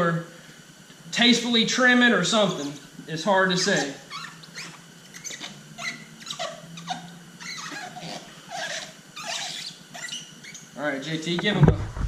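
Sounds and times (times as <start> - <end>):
protective film squeaking: 2.3 - 2.9, 3.5 - 10.8.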